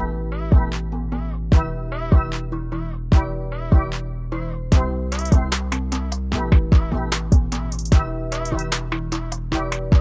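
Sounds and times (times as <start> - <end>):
deep kick drums: 0.0 - 0.8, 1.5 - 2.4, 3.1 - 4.0, 4.7 - 5.6, 6.3 - 8.7
drum machine beat: 4.7 - 10.0
crisp hi-hats: 7.2 - 10.0.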